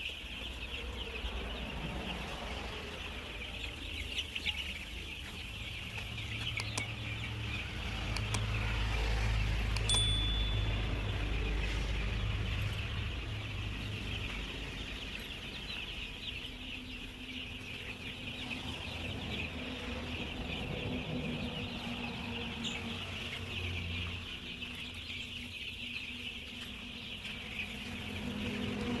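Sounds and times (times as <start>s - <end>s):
chicks cheeping: 0.0s - 29.0s.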